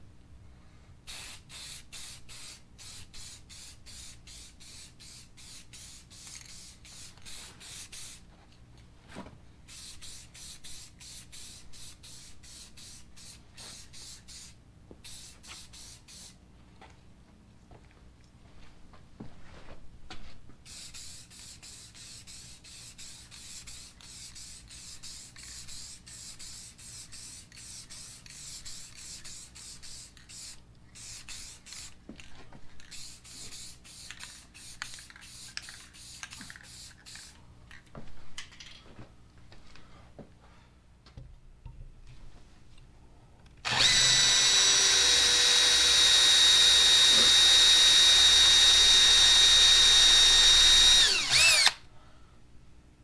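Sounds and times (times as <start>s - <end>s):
power tool whining: 43.6s - 51.8s.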